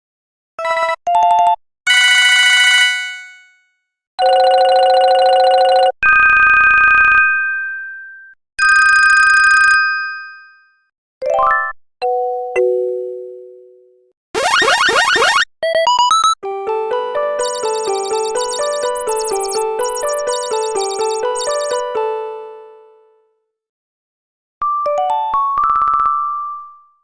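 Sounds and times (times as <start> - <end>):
electronic phone ringtones: 4.2 - 6.0, 14.4 - 15.4, 17.4 - 21.9
quick beep bursts: 14.4 - 15.4, 17.4 - 21.8
rising run of notes: 14.4 - 15.4.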